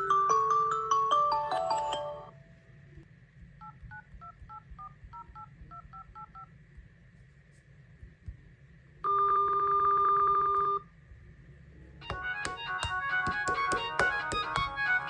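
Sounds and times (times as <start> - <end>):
bell-like phone ringtone: 0.0 - 2.4.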